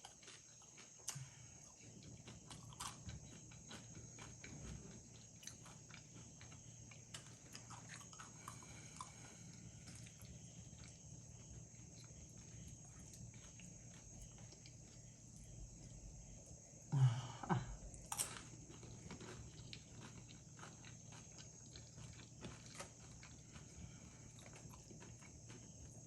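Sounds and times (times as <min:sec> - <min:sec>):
chewing crisp chips: 0:00.0 - 0:16.2, 0:17.8 - 0:26.0.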